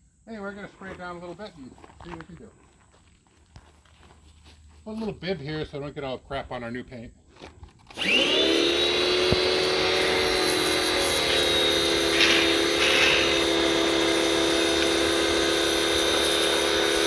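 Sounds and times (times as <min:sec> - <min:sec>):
pressure washer motor whine: 0:07.9 - 0:17.0
water hiss: 0:08.7 - 0:17.0.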